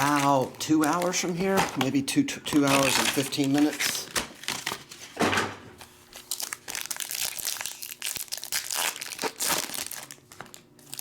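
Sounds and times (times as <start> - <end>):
card wrappers crinkling: 0.0 - 5.2, 5.8 - 11.0
cards being handled: 0.0 - 5.2.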